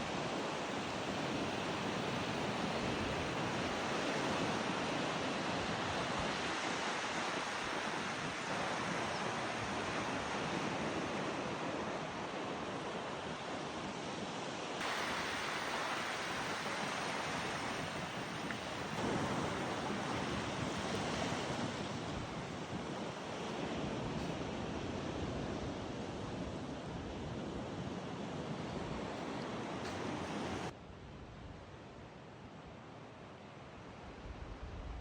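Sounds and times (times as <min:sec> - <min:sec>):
sea surf washing onto beach: 0:00.0 - 0:14.0, 0:14.6 - 0:26.9
wind: 0:00.0 - 0:35.0.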